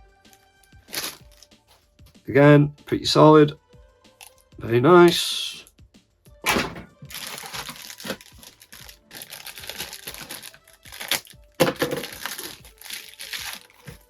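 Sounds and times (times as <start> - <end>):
plastic bags crinkling: 0.9 - 1.3, 6.5 - 14.0.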